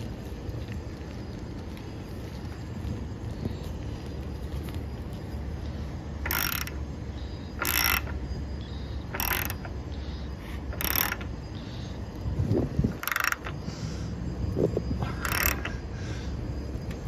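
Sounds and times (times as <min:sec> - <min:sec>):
ratchet wrench clicking: 0:06.2 - 0:06.8, 0:07.6 - 0:08.2, 0:09.1 - 0:09.7, 0:10.7 - 0:11.3, 0:12.9 - 0:13.6, 0:15.1 - 0:15.8.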